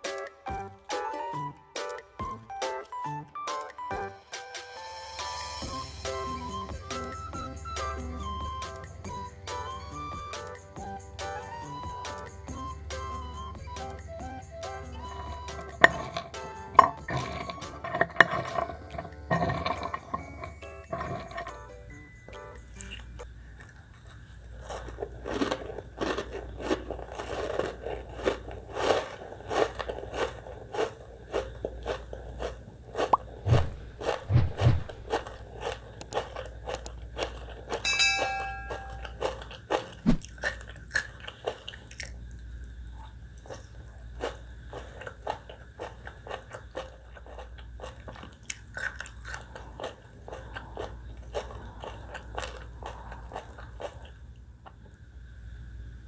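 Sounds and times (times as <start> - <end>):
crisp wet crunching and chewing: 14.8 - 21.7, 22.3 - 37.9, 39.0 - 55.0.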